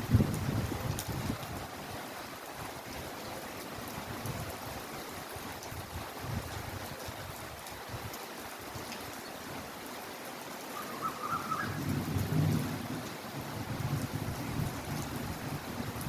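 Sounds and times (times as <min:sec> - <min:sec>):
heavy rain falling: 0:00.0 - 0:16.0.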